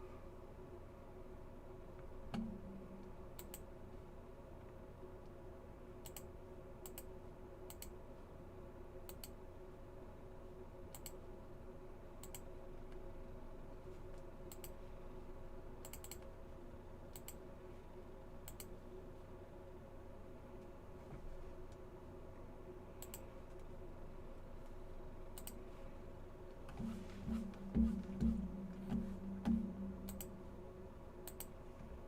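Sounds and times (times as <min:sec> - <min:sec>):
low electrical hum: 0:00.0 - 0:32.0
computer mouse clicking: 0:03.3 - 0:03.7, 0:06.0 - 0:08.0, 0:09.0 - 0:09.4, 0:10.9 - 0:11.2, 0:12.2 - 0:13.0, 0:14.5 - 0:14.8, 0:15.8 - 0:16.3, 0:17.1 - 0:17.4, 0:18.4 - 0:18.8, 0:23.0 - 0:23.7, 0:25.3 - 0:25.6, 0:30.0 - 0:30.3, 0:31.2 - 0:31.6.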